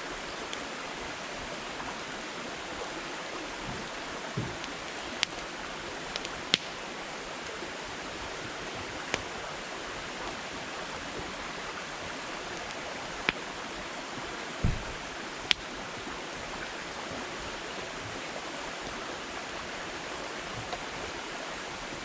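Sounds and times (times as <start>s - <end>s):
campfire hissing: 0.0s - 22.0s
fire crackling pops: 3.8s - 7.6s, 8.4s - 13.5s, 14.6s - 15.8s
soft low thud: 14.6s - 15.0s.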